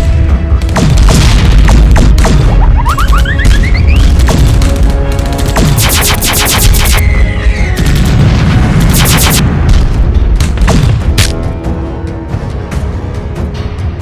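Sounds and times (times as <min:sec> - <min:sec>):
background music: 0:00.0 - 0:14.0
machine-gun fire: 0:04.2 - 0:07.0, 0:08.9 - 0:09.4.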